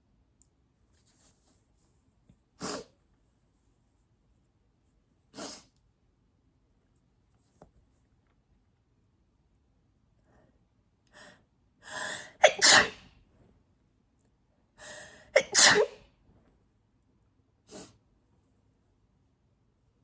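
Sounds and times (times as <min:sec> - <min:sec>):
gasping in-breath: 0:11.2 - 0:12.4, 0:14.8 - 0:15.3
woman sneezing: 0:12.0 - 0:13.0, 0:15.4 - 0:16.0.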